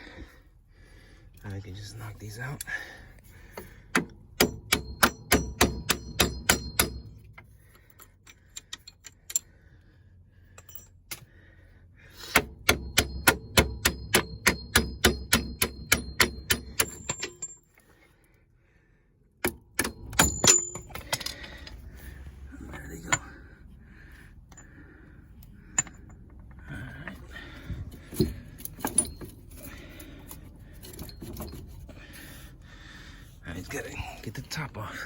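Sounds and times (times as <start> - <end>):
hammer striking steel: 4.0 - 7.2, 12.4 - 17.4.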